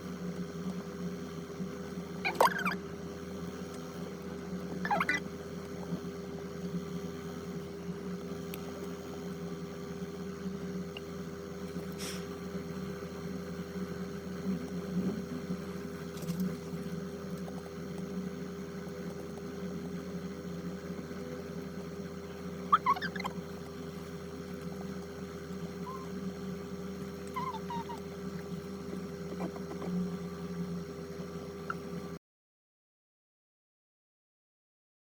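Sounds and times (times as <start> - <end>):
steady mechanical hum: 0.0 - 32.2
short chirp: 25.8 - 26.2.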